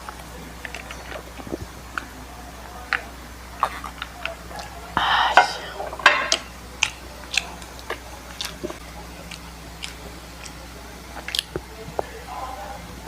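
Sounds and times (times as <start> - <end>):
chewing with sharp clicks: 2.9 - 4.8, 6.3 - 12.1.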